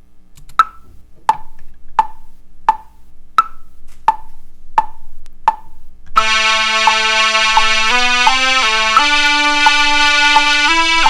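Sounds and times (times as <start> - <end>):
metronome clicks: 0.4 - 11.0
synth lead held notes: 6.2 - 11.0.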